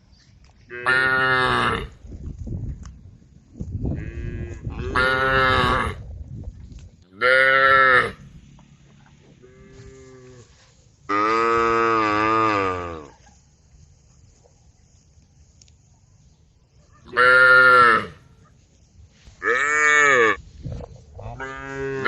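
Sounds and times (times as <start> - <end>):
cows mooing: 4.0 - 6.0, 7.2 - 8.2, 9.3 - 13.1, 19.4 - 20.4, 21.4 - 22.0.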